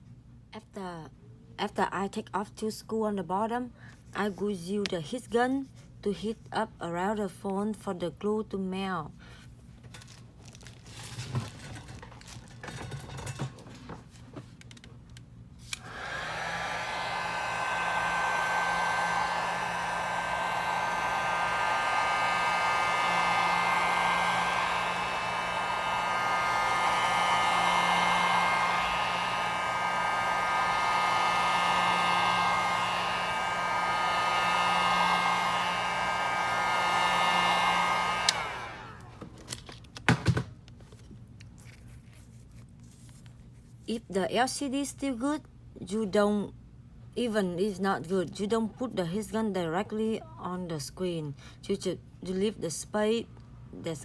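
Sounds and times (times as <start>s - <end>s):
heat gun blowing: 15.6s - 39.2s.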